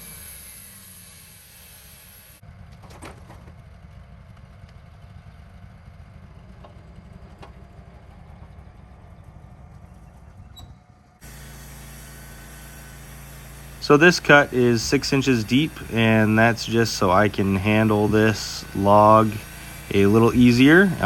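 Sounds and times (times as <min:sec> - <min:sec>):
band sawmill running: 0:00.0 - 0:03.5, 0:11.2 - 0:21.0.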